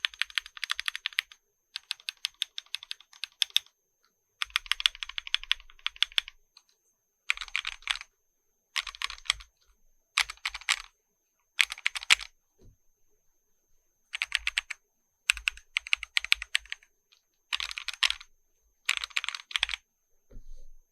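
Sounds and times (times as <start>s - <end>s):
mechanical keyboard typing: 0.0s - 3.7s, 4.4s - 6.7s, 7.3s - 8.1s, 8.8s - 9.6s, 10.2s - 10.9s, 11.6s - 12.3s, 14.1s - 18.3s, 18.9s - 19.8s.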